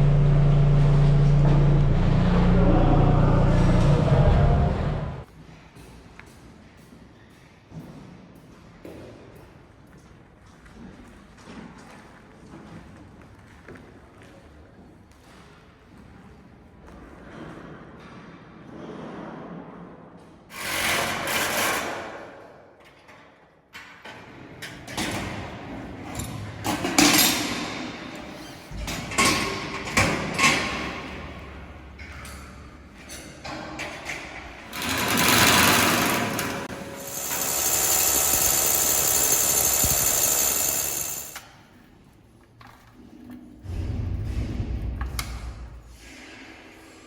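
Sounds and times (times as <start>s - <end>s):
power tools on steel: 34.7s - 41.5s
high-pitched tool whine: 36.1s - 41.4s.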